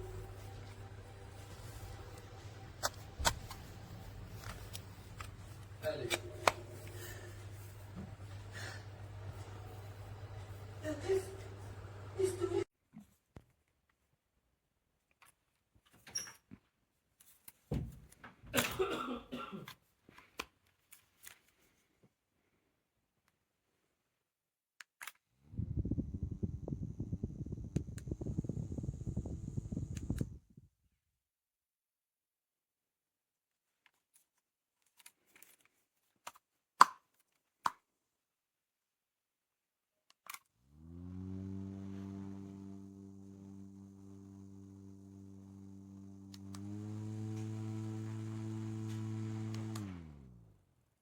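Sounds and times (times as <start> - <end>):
handheld fan motor whine: 25.5 - 30.5, 40.7 - 50.6
air buffeting microphone: 25.5 - 30.6
clicks: 46.2 - 50.0.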